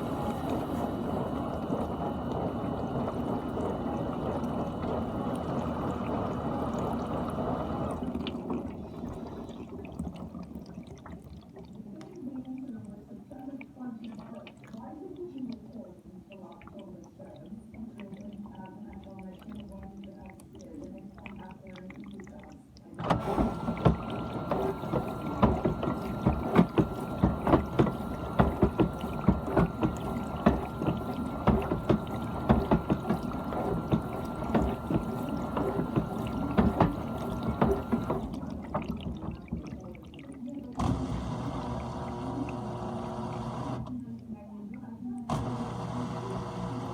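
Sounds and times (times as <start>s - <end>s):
dishwasher water spraying: 0.0s - 10.2s, 23.0s - 43.8s
dishwasher motor whine: 0.0s - 11.6s, 23.0s - 44.3s, 45.2s - 46.9s
steady hum: 23.2s - 44.1s.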